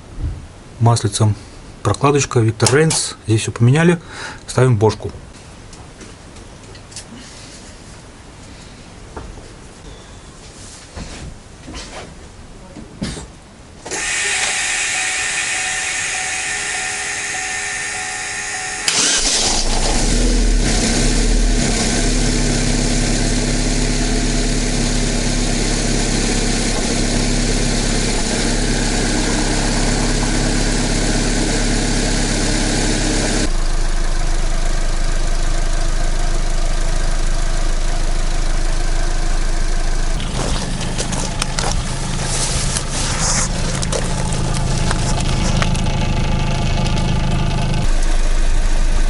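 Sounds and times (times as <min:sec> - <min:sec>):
starter motor whine: 0:13.9 - 0:36.5, 0:37.1 - 0:49.0
car engine idling: 0:14.8 - 0:49.0.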